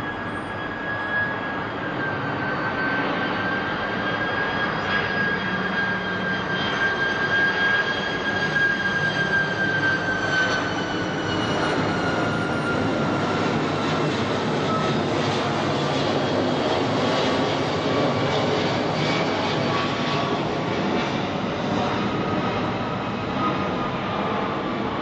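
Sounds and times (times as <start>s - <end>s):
jet airliner roar and whine: 0.0s - 25.0s.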